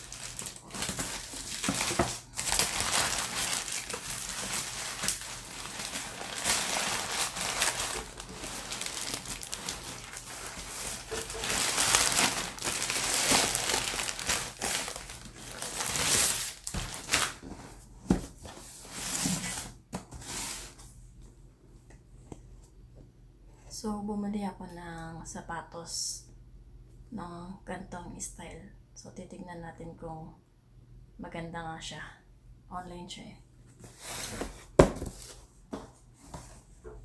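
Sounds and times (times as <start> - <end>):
packaging tearing and crinkling: 0.0 - 17.4.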